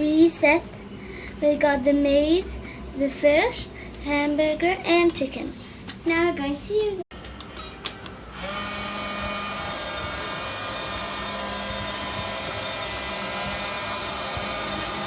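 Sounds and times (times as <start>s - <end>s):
toy microwave humming: 8.3s - 12.0s.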